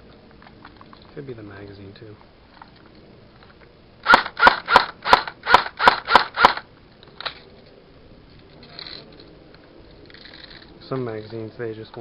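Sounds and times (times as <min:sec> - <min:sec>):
airsoft rifle shots: 0:04.0 - 0:06.7.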